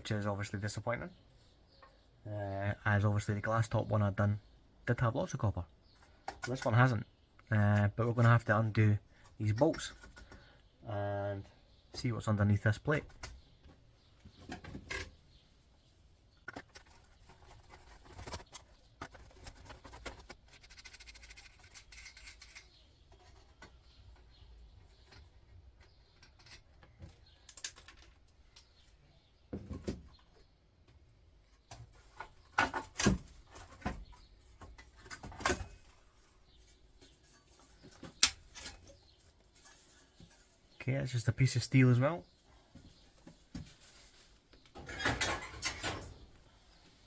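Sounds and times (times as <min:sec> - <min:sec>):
metal parts clicking and knocking: 0:16.4 - 0:23.7.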